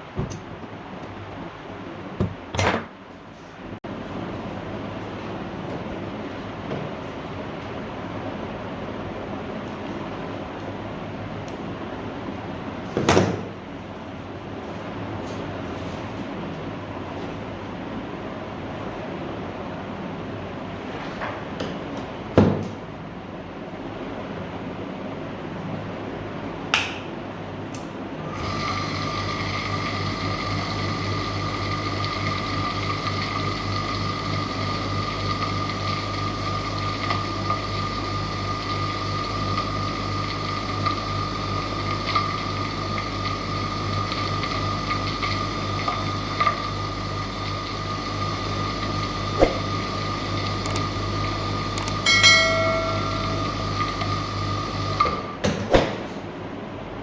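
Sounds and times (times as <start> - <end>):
electric motor humming and whining: 28.4 - 55.3
sharp clicks: 51.8 - 52.0.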